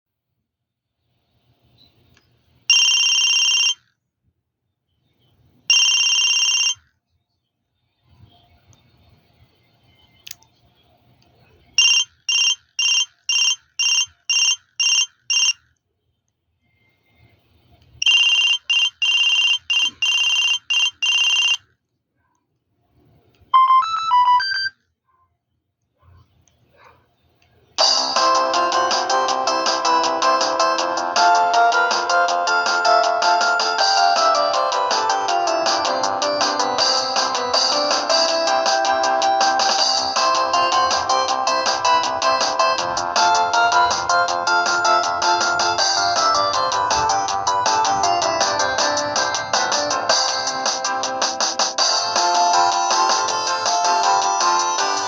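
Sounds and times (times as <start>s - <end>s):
pulsing electronic phone ringtone: 2.7s - 3.8s, 5.7s - 6.9s, 11.8s - 15.6s, 18.0s - 21.6s, 23.6s - 24.7s, 27.8s - 50.6s
electronic phone ring: 2.7s - 3.9s, 5.7s - 6.9s, 11.8s - 15.7s, 18.0s - 21.8s, 23.6s - 24.8s.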